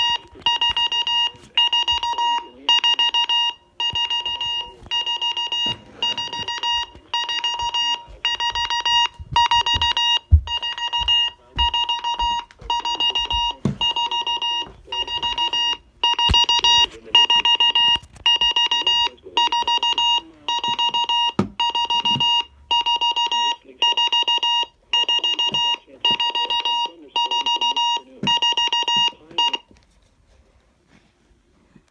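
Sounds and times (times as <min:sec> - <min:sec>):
alarm clock beeping: 0:00.0 - 0:29.7
soft thumps: 0:05.6 - 0:15.5.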